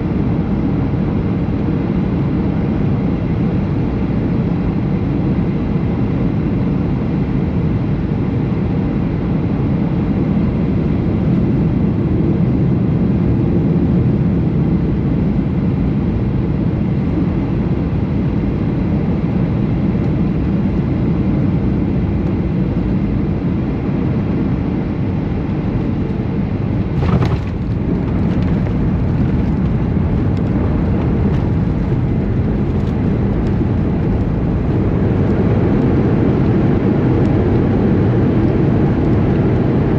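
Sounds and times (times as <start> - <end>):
airplane cabin engine noise: 0.0 - 39.9
sharp clatter: 26.9 - 34.7.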